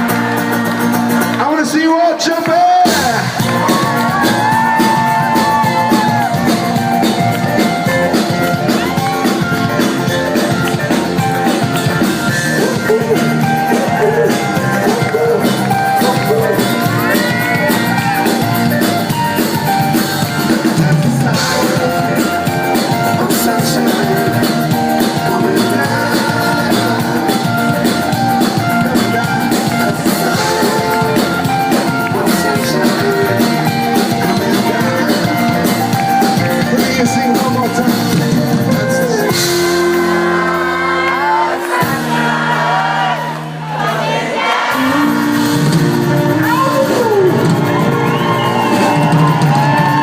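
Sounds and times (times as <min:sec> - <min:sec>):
rock band instrumental: 0:00.0 - 0:50.0
crowd whooping and shouting: 0:02.4 - 0:22.4, 0:39.6 - 0:50.0.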